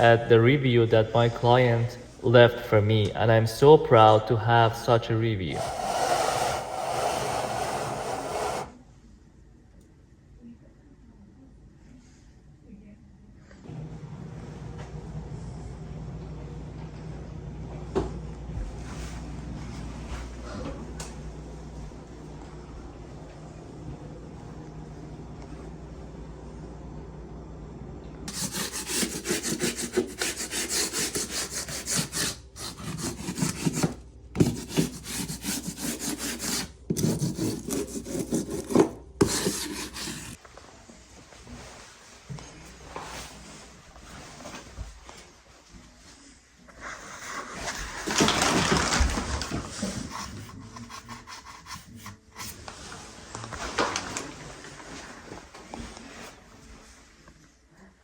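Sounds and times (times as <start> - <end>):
hand tool rasping a board: 5.5 - 8.7, 28.3 - 40.4.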